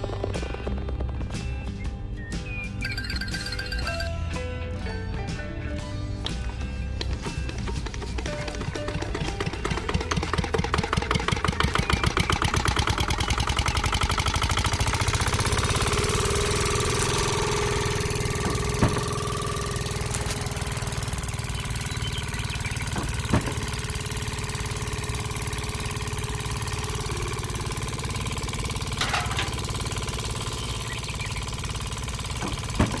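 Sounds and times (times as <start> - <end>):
small engine chugging: 0.0 - 4.4, 5.8 - 33.0
sharp knocks or clanks: 15.4 - 21.0, 22.8 - 24.4, 28.9 - 29.8, 32.4 - 33.0.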